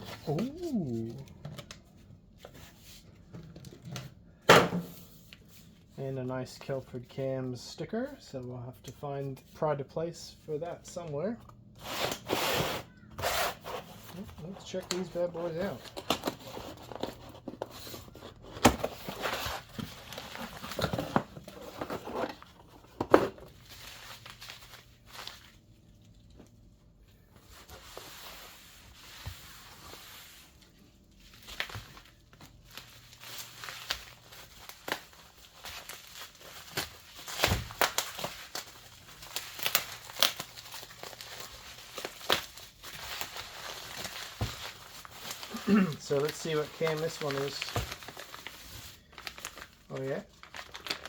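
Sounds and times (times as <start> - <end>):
packaging crinkling and tearing: 0.0 - 2.0, 13.2 - 26.4, 27.8 - 51.0.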